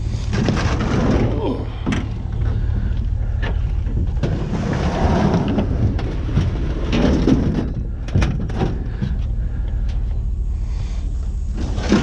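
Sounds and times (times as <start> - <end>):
vehicle idling: 0.0 - 12.0
metal clattering and scraping: 0.1 - 2.6, 3.4 - 9.2, 11.6 - 12.0.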